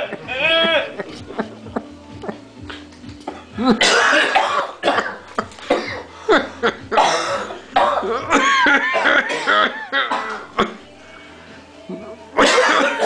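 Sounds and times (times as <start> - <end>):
person coughing hard: 3.6 - 10.8, 12.4 - 13.0.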